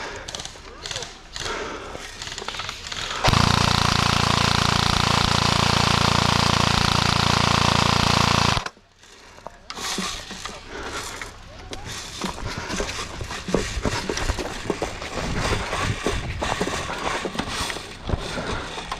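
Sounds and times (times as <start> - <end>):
airsoft gun full-auto burst: 2.2 - 8.7.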